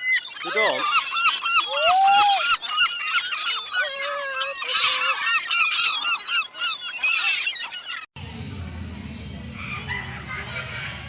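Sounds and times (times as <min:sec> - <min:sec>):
many birds calling: 0:00.0 - 0:08.1, 0:09.5 - 0:11.0
low hum: 0:08.2 - 0:11.0.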